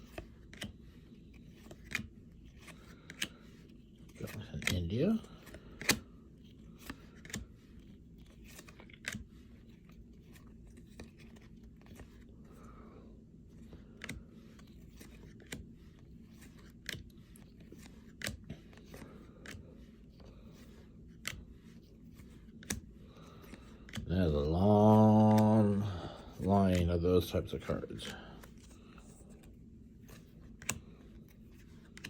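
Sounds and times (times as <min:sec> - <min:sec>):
low room hum: 0:00.0 - 0:32.0
trading cards snapping: 0:05.4 - 0:06.1, 0:06.7 - 0:07.5, 0:08.3 - 0:09.2, 0:17.7 - 0:19.7, 0:21.1 - 0:21.5, 0:22.2 - 0:24.0, 0:30.1 - 0:31.0.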